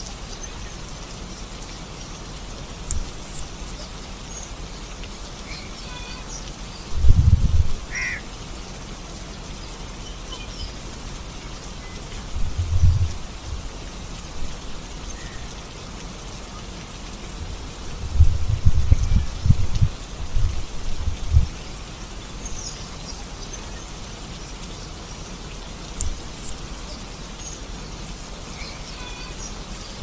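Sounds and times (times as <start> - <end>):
steady rain falling: 0.0 - 30.0
short bird calls: 7.9 - 8.2.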